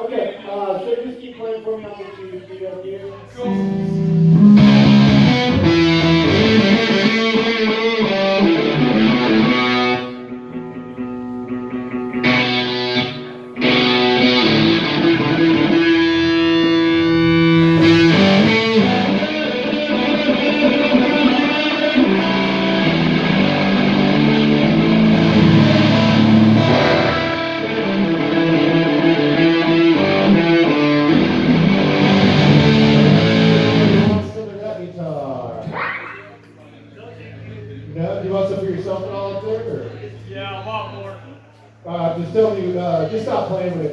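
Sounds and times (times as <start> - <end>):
electric guitar chords: 3.1 - 34.5.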